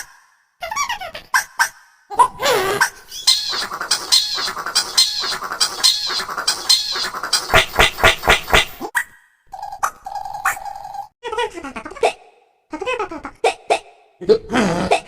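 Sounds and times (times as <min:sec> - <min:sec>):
cartoon squeals and squeaks: 0:00.6 - 0:07.5
sharp thumps: 0:03.3 - 0:08.8.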